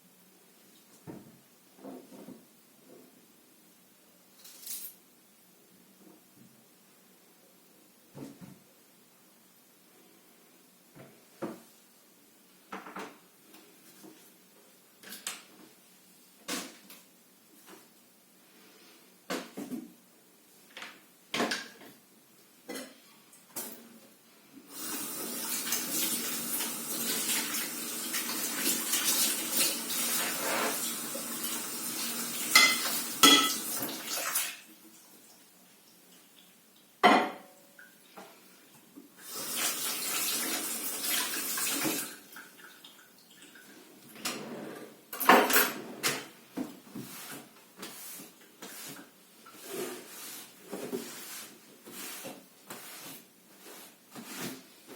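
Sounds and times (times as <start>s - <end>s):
dishes and utensils clinking: 32.5s - 33.7s.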